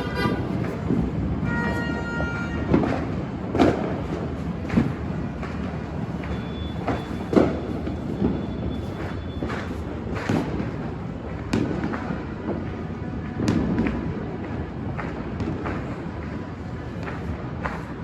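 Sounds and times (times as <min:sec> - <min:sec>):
steady background hum: 0:00.0 - 0:01.4
firecracker and firework bangs: 0:00.0 - 0:18.0.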